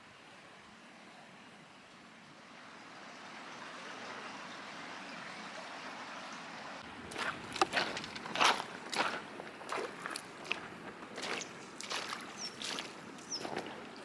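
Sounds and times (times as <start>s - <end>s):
stream rushing water: 2.4s - 14.0s
sharp footsteps: 7.0s - 14.0s.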